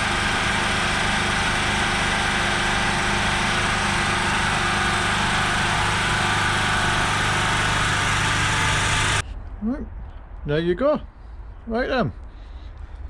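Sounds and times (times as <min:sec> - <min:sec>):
generator engine running: 0:00.0 - 0:09.2.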